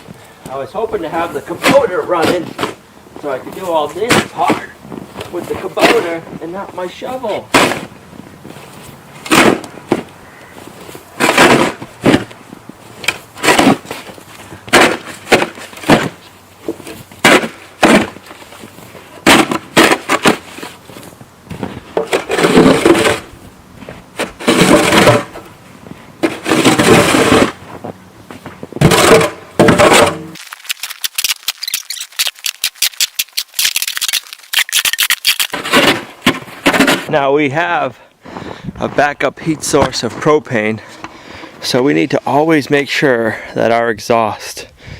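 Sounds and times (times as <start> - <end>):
snow shovel scraping snow: 0.9 - 10.0, 10.6 - 27.9.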